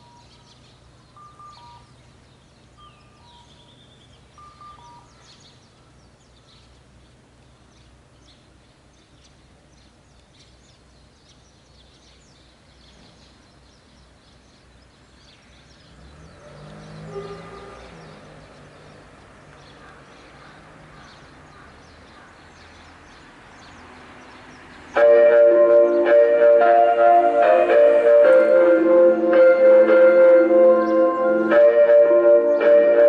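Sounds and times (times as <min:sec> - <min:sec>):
small birds chirping: 0:00.0 - 0:25.0
distant traffic hum: 0:00.0 - 0:33.0.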